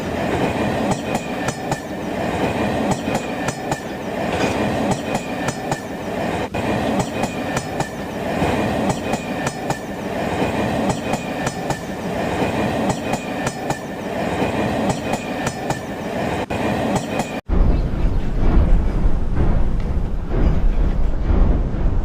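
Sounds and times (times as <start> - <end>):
train rumbling on track: 0.0 - 22.0.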